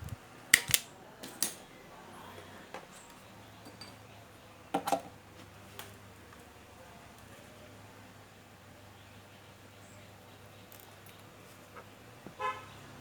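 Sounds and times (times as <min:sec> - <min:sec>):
small parts clicking on workbench: 0:00.5 - 0:01.6.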